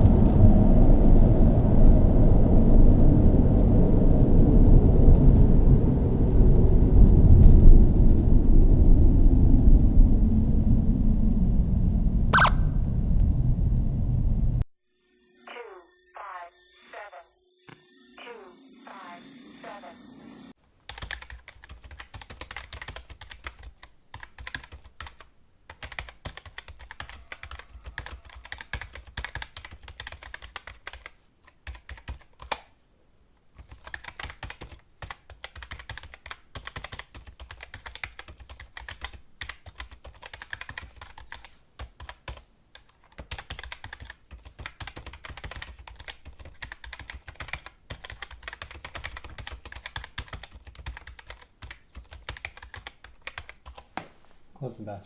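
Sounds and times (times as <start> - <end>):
keyboard typing: 20.8 - 32.7, 33.5 - 53.9.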